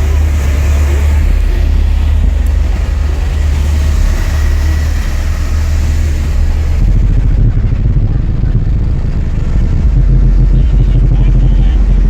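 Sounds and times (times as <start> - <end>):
loud deep bass from subwoofers: 0.0 - 12.0.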